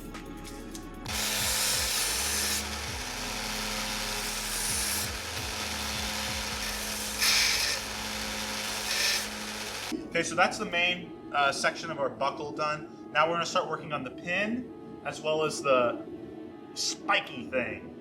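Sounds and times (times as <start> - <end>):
abrasive grinding hiss on steel: 1.1 - 9.9
grinder motor hum: 1.1 - 10.0.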